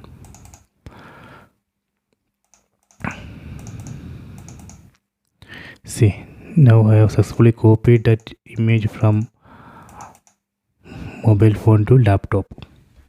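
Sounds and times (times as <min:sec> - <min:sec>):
laptop keyboard tapping: 0:00.2 - 0:00.7, 0:03.6 - 0:04.9.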